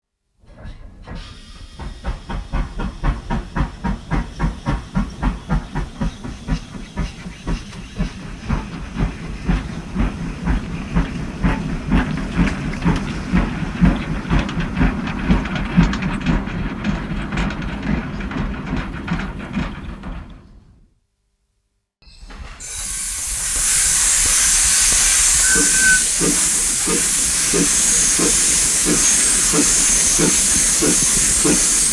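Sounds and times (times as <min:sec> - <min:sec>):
steam locomotive chuffing: 0:00.6 - 0:20.8, 0:22.3 - 0:31.9
steam hissing: 0:01.0 - 0:14.4, 0:22.4 - 0:31.9.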